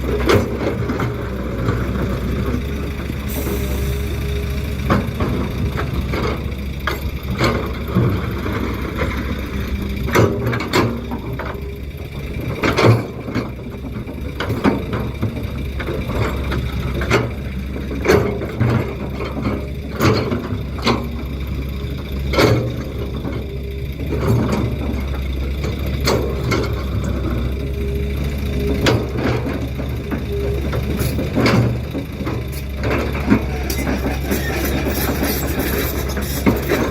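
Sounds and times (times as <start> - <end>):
heavy diesel machinery running: 0.0 - 36.9
excavator bucket clanking on stone: 28.8 - 36.9.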